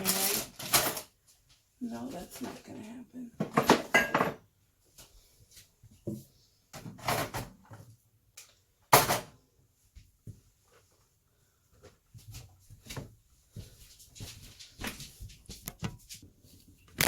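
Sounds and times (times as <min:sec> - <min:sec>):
drawers and cupboards opening and shutting: 0:00.0 - 0:01.2, 0:03.4 - 0:04.5, 0:06.8 - 0:07.9, 0:08.9 - 0:09.4.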